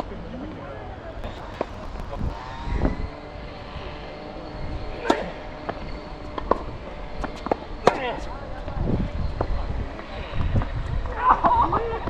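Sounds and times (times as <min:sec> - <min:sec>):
low wind noise: 0:00.0 - 0:12.0
tennis balls bouncing on court: 0:01.2 - 0:03.6
tennis balls struck by rackets: 0:01.2 - 0:03.6, 0:04.9 - 0:08.2.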